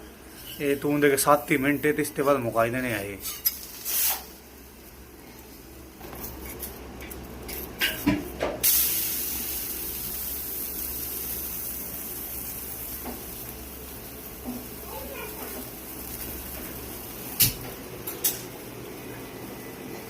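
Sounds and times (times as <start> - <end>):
batter sizzling on griddle: 0.0 - 20.0.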